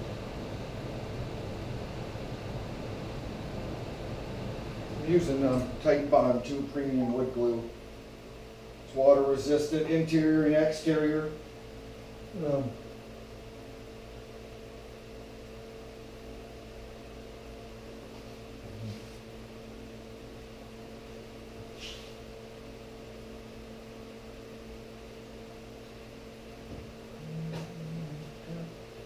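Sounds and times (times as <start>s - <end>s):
steady motor hum: 0.0s - 29.0s
short hiss: 21.8s - 22.2s.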